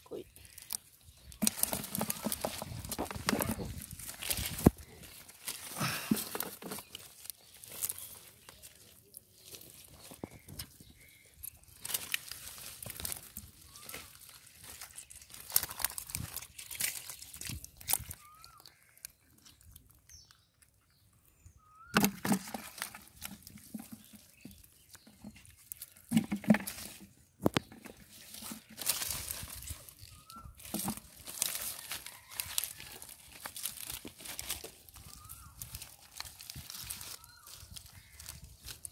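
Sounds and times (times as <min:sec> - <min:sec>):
rustling wet plants: 0:00.0 - 0:20.4, 0:21.6 - 0:38.9
fishing net being shaken: 0:01.4 - 0:04.6.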